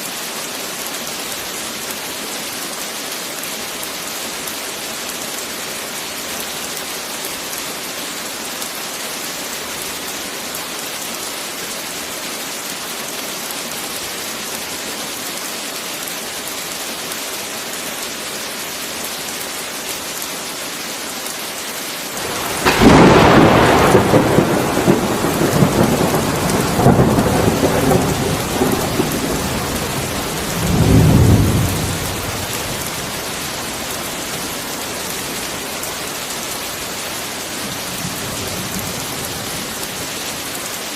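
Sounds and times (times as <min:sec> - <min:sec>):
heavy rain: 0:00.0 - 0:40.9
thunderclap rumbling: 0:22.2 - 0:33.8.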